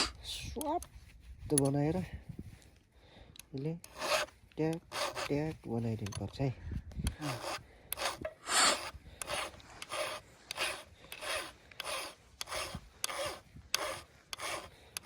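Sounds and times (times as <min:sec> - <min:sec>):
file rasping on chainsaw chain: 0:03.8 - 0:06.3, 0:07.1 - 0:15.0.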